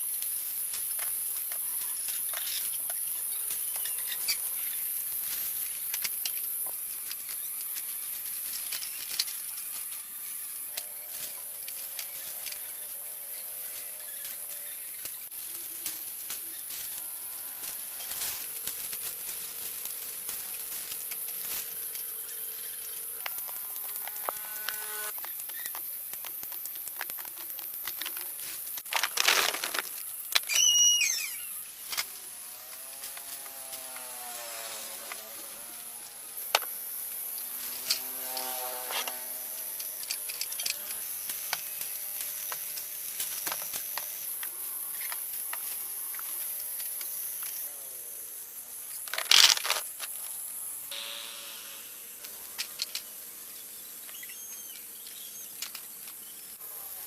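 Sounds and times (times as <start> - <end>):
high-pitched insect drone: 0.0 - 57.0
animal and bird calls: 1.6 - 5.0, 30.5 - 31.7, 53.6 - 56.6
loud rustle: 28.1 - 47.5
sharp chirping call: 30.5 - 31.6.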